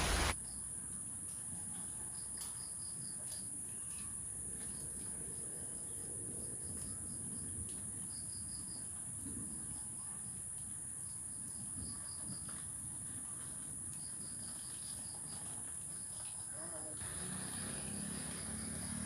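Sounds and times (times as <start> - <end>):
low rustle: 0.0 - 0.4
insects drone and chirps: 17.0 - 19.0.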